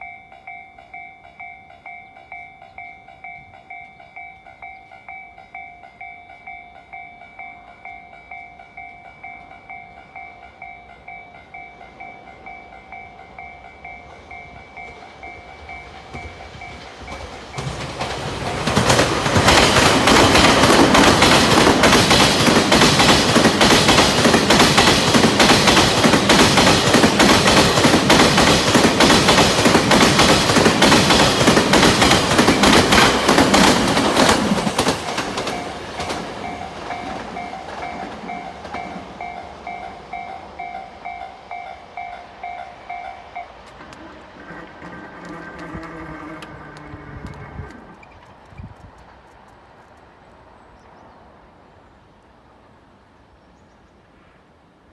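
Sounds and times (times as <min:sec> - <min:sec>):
freight train rushing: 0:00.8 - 0:51.6
wheels clattering over rail joints: 0:14.2 - 0:40.2.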